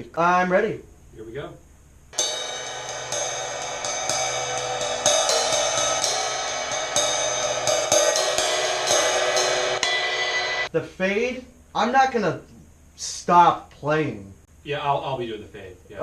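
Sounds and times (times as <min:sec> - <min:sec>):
cymbals ringing: 0:02.1 - 0:11.8
drum kit playing: 0:02.2 - 0:10.8.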